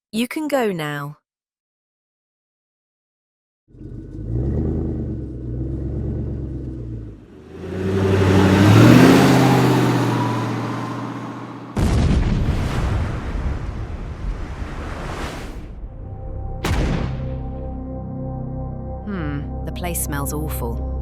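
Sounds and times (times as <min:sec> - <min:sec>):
car engine revving and accelerating: 0:03.7 - 0:11.8.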